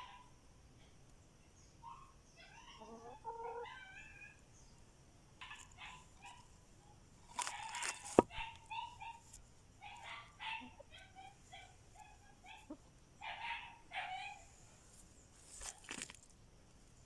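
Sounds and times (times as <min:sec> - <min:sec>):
chicken calling: 0:02.4 - 0:04.4, 0:09.8 - 0:14.4
rustling: 0:07.2 - 0:10.2, 0:14.5 - 0:17.0.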